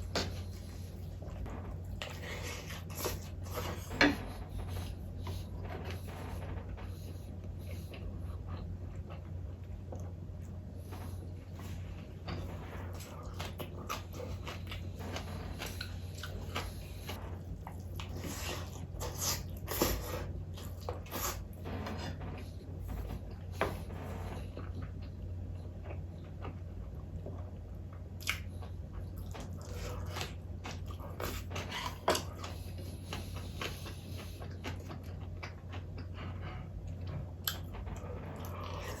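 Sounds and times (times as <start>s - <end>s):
steady low hum: 0.0s - 39.0s
person chewing: 12.4s - 21.5s, 28.2s - 36.4s, 37.4s - 37.8s.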